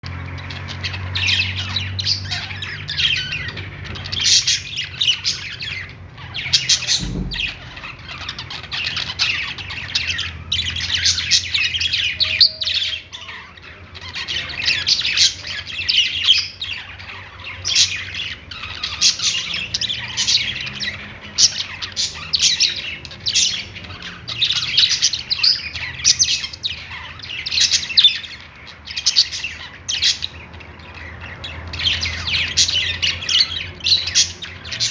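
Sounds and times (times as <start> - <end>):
budgerigars chirping: 0.0 - 34.9
low thump: 6.8 - 7.9.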